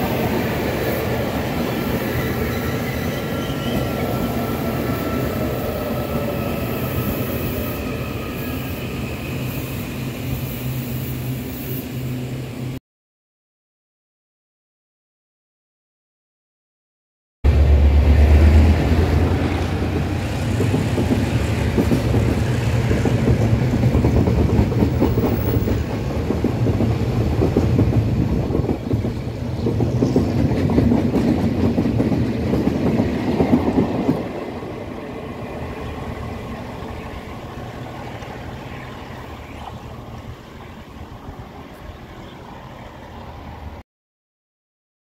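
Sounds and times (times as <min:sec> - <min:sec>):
low train hum: 0:00.0 - 0:12.8, 0:17.5 - 0:43.8
train wheels clattering on rails: 0:18.5 - 0:35.0.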